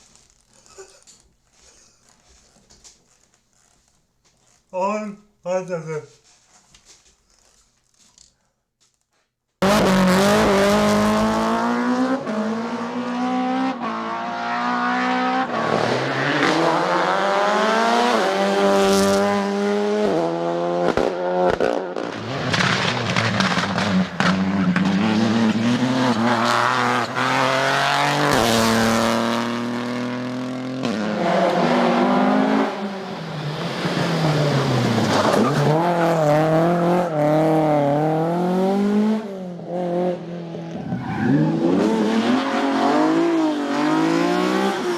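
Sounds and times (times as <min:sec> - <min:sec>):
rally car engines revving: 0:09.6 - 0:44.9.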